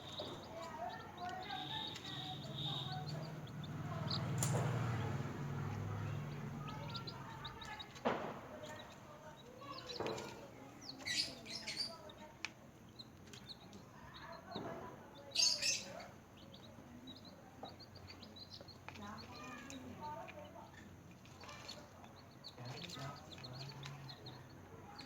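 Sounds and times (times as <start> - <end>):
chicks peeping: 0.0 - 25.0.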